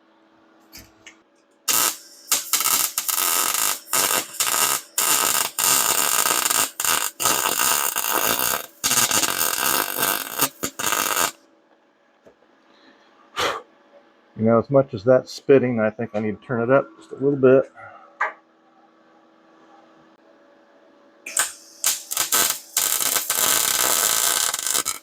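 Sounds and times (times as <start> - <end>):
welder arc crackling: 0.8 - 11.4, 21.3 - 25.0.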